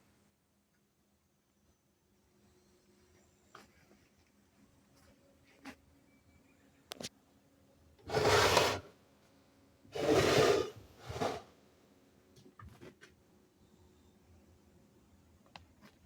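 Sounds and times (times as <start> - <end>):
rubbing scrapes: 8.1 - 8.9, 10.0 - 11.5.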